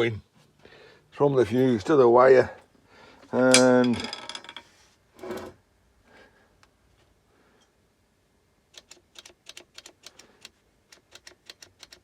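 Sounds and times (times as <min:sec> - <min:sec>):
rapid light clicks: 0:08.8 - 0:12.0.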